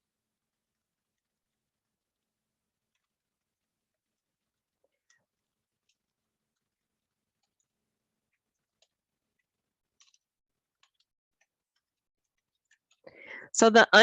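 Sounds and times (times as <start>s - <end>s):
faint keyboard typing clicks: 2.9s - 3.2s, 4.2s - 13.4s.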